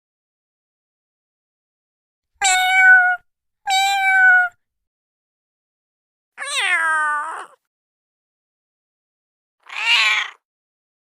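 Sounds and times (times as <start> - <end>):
cat meowing: 2.4 - 4.6, 6.4 - 7.6, 9.6 - 10.5.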